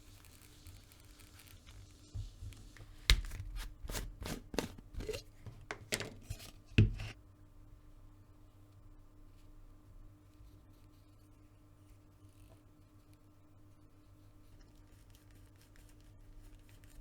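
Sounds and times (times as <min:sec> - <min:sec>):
scrapes and light taps: 0:00.3 - 0:07.2.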